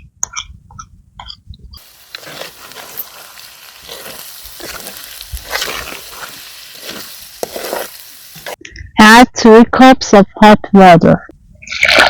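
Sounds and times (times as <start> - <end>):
food sizzling in oil: 1.8 - 8.6
spoon stirring and scraping pan: 1.8 - 8.6.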